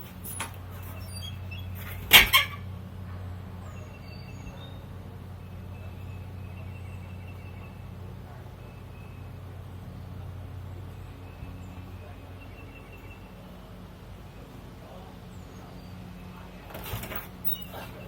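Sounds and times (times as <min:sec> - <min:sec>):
low mechanical hum: 0:00.0 - 0:18.0
faint bird chirps: 0:17.4 - 0:18.0.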